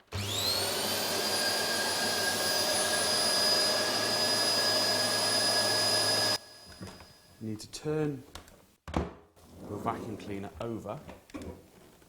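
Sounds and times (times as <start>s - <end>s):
vacuum cleaner motor whining: 0.0s - 7.4s.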